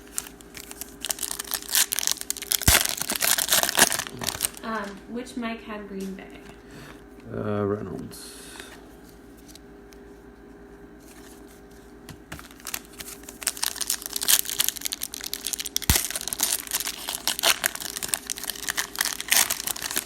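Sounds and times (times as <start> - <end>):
plastic wrapper crinkling: 0.0 - 5.0, 12.3 - 20.0
wrapper snap: 0.0 - 5.0, 12.1 - 20.0.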